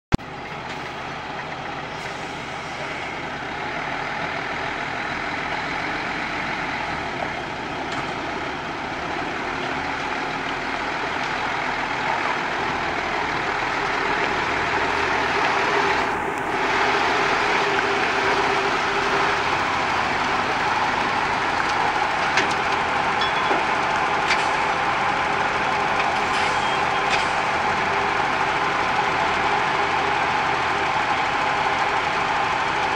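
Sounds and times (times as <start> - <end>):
truck diesel engine running: 0.1 - 32.9.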